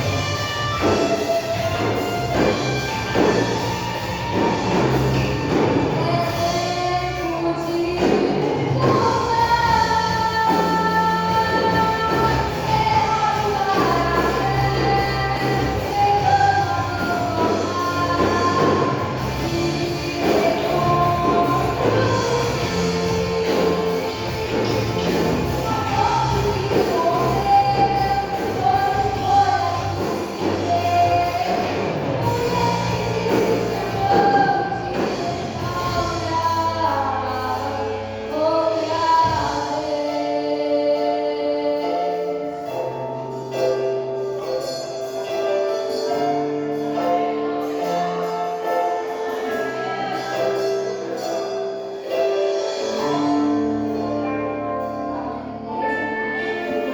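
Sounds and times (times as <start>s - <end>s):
gospel band playing: 0.0s - 56.9s
people singing: 7.9s - 37.6s, 47.0s - 53.4s.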